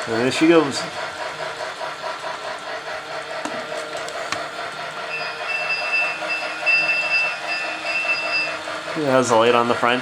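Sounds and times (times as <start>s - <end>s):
toy train motor and wheels: 0.0s - 10.0s
high steady tone: 5.1s - 8.6s.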